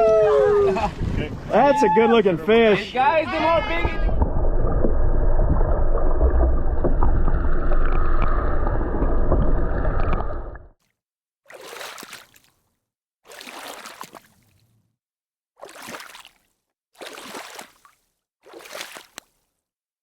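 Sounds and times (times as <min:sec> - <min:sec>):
wind: 0:00.0 - 0:08.3
boat engine rumble: 0:00.0 - 0:10.7
water splashing: 0:03.3 - 0:10.8, 0:11.5 - 0:12.7, 0:13.3 - 0:14.7, 0:15.6 - 0:19.5.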